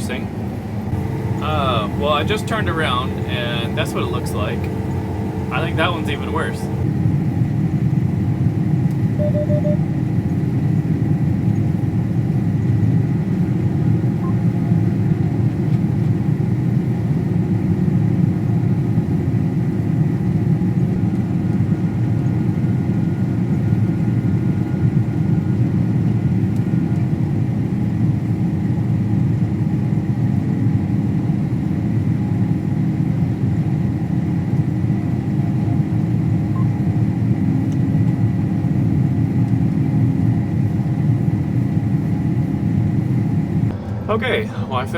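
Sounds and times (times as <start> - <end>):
combine harvester drone: 0.0 - 44.9
faint high whine: 0.9 - 6.9, 9.2 - 9.8.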